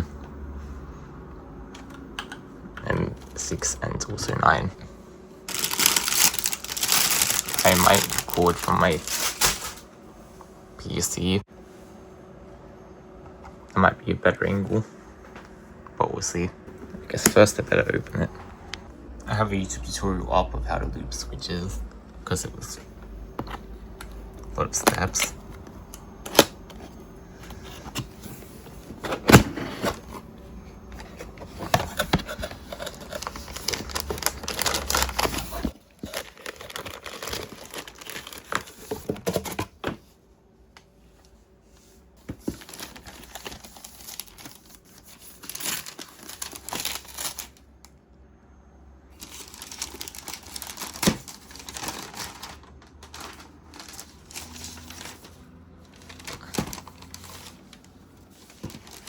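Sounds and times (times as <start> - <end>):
plastic wrap and foam crinkling: 5.5 - 9.8, 31.4 - 39.6, 42.3 - 47.6, 49.2 - 59.0.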